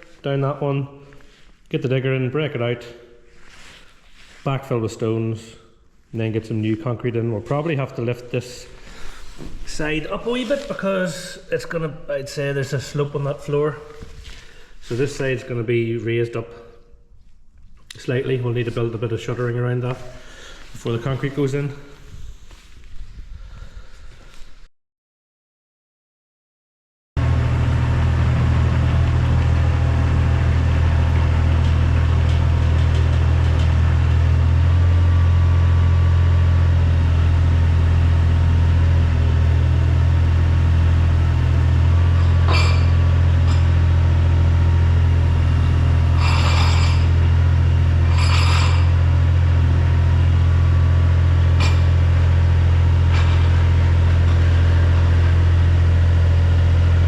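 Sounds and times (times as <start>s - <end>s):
construction equipment engine running: 27.2s - 57.0s
metal clanks and scrapes: 31.2s - 34.0s, 42.1s - 43.9s, 46.0s - 49.2s, 51.6s - 52.1s, 53.1s - 54.6s.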